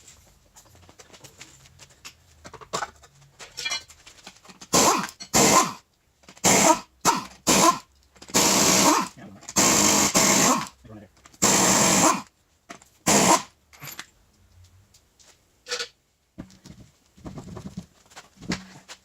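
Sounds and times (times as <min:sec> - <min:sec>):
pneumatic impact wrench bursts: 0:04.7 - 0:05.8, 0:06.4 - 0:10.8, 0:11.4 - 0:12.3, 0:13.0 - 0:13.6.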